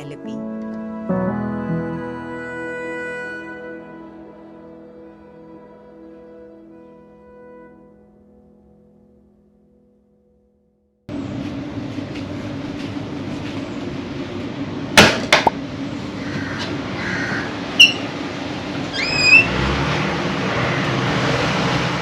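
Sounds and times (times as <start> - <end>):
background hum and rumble: 11.1 - 22.0
bird-like chirps: 17.8 - 18.1.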